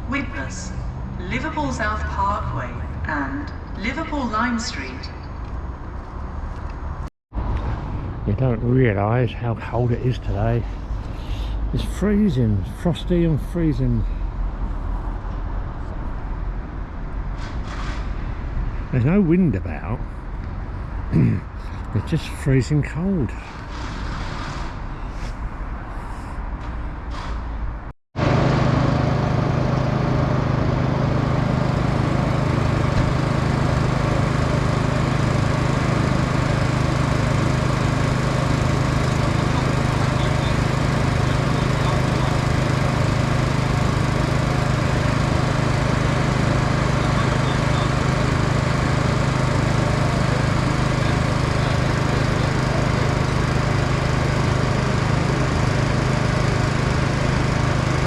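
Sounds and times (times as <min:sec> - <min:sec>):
diesel train engine idling: 0:08.3 - 0:14.2, 0:28.2 - 0:58.0.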